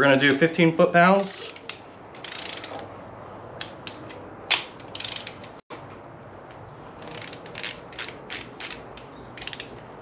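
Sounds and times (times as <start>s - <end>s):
torque wrench ratcheting: 1.4s - 2.8s, 4.9s - 5.5s, 7.0s - 9.8s.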